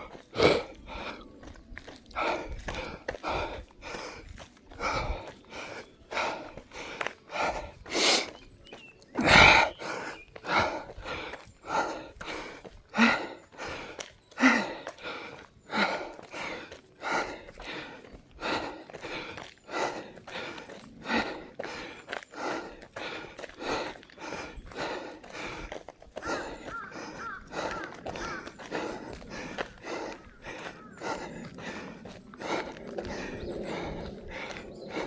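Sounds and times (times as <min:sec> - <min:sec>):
person gasping loudly: 0:00.0 - 0:01.2, 0:09.2 - 0:21.8, 0:22.4 - 0:35.0
person panting hard: 0:00.0 - 0:35.0.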